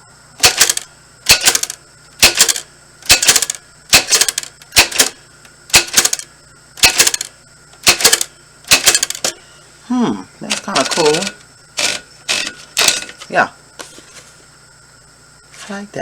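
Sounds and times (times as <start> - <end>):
typewriter keys clacking: 0.4 - 6.2, 6.8 - 9.3, 10.5 - 13.1.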